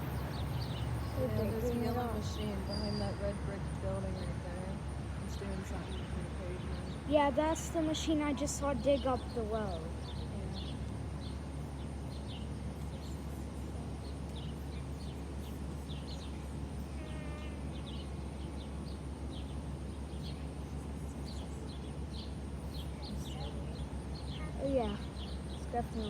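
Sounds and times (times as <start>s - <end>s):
long rich bird call: 0.0s - 3.3s, 8.9s - 26.0s
steady low rumble: 0.0s - 26.0s.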